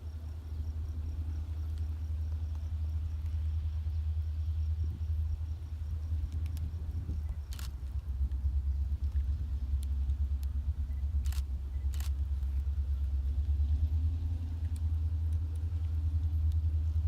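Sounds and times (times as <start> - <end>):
faint hum: 0.0 - 17.0
low steady rumble: 0.0 - 17.0
faint clicks: 6.2 - 10.6, 14.6 - 16.7.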